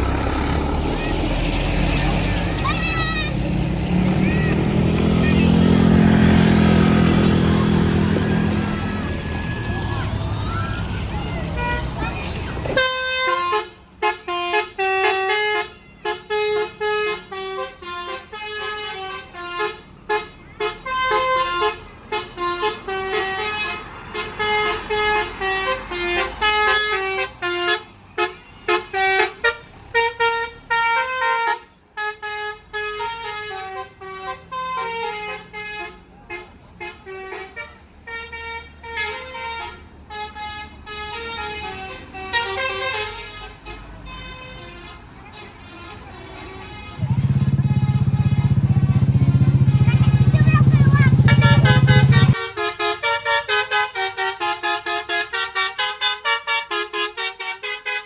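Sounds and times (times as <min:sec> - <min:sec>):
musical bus air horn: 0:10.9 - 0:12.0, 0:12.7 - 0:58.0.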